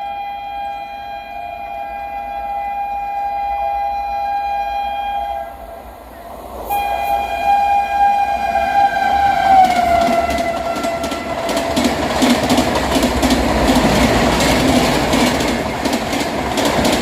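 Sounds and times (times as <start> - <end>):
locomotive horn blast: 0.0 - 11.8
train passing: 0.0 - 17.0.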